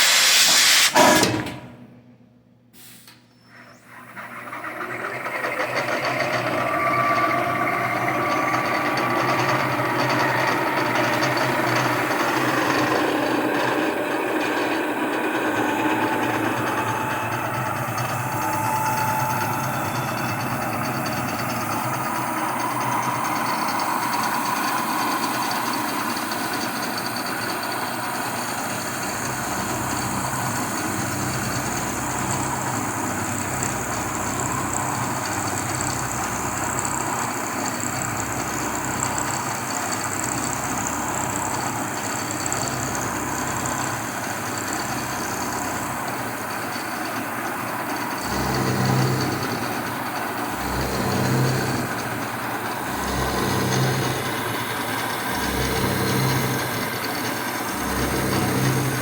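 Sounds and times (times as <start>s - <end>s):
milling machine cutting noise: 3.8s - 59.0s
high whine: 5.5s - 59.0s
low pulsing hum: 6.5s - 26.9s, 48.2s - 59.0s.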